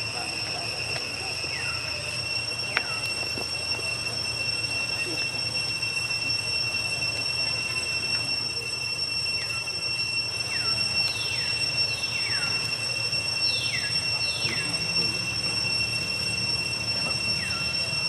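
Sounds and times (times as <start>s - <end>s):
cicadas droning: 0.0s - 18.0s
falling whistled calls: 0.0s - 18.0s.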